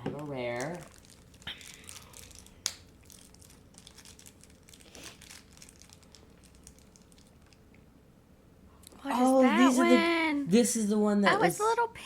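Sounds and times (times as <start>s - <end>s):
plastic packaging crinkling: 0.2s - 7.6s.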